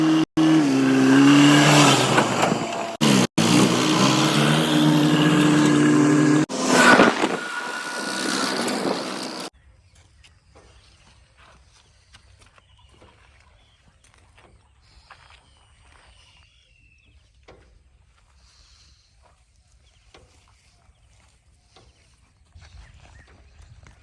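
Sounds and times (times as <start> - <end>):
motor engine running: 0.0 - 9.5
noisy sound: 1.1 - 9.5.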